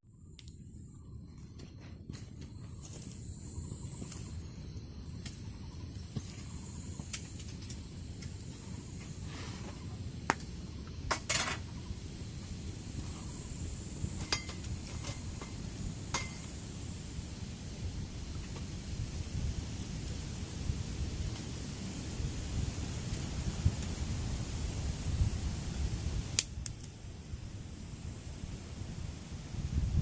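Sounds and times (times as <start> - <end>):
steady low rumble: 0.0 - 30.0
metal cookware clinking: 14.2 - 16.5.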